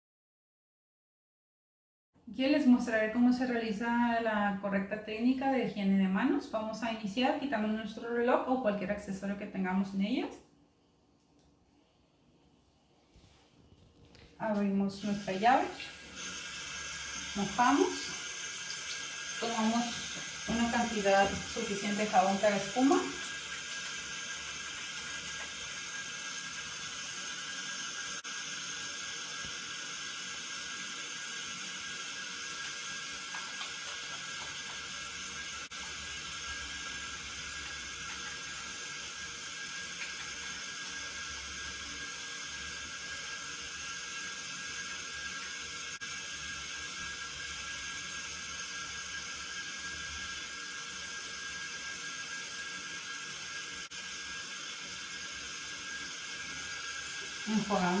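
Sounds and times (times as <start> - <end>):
tap water running into sink: 15.0 - 58.0.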